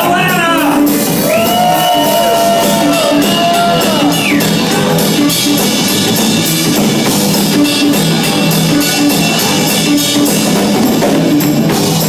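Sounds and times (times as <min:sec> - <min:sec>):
rock band playing: 0:00.0 - 0:12.0.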